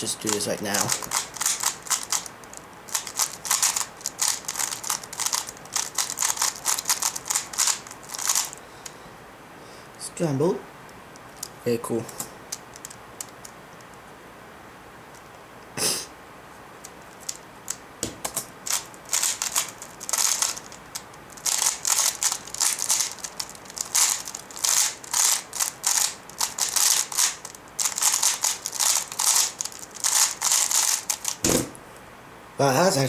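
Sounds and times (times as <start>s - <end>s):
puzzle cube clicking: 0.2s - 8.6s, 16.8s - 31.6s
loud knock: 31.4s - 31.8s.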